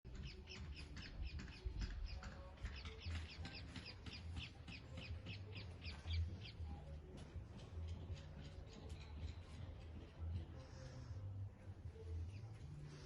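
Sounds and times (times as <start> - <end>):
bird chirping: 0.1 - 6.9.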